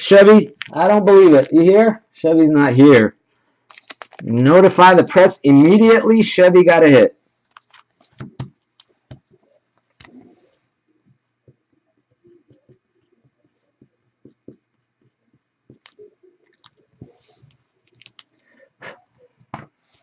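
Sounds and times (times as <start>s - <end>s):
trading cards being handled: 3.7s - 4.4s, 7.4s - 10.5s, 12.3s - 20.0s
soft clicks and rustles: 7.4s - 20.0s.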